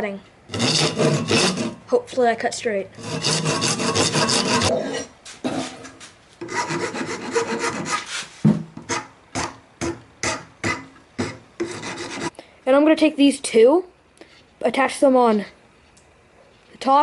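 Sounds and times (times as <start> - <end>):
hand saw cutting plastic pipe: 0.5 - 1.8, 3.0 - 4.7, 6.4 - 12.3.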